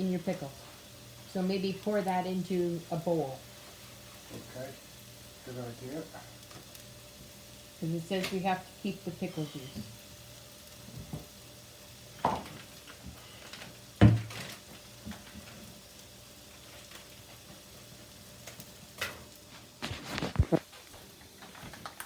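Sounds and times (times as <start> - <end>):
burger patties sizzling in a pan: 0.0 - 22.0
kitchenware knocks: 12.2 - 12.5, 14.0 - 14.3.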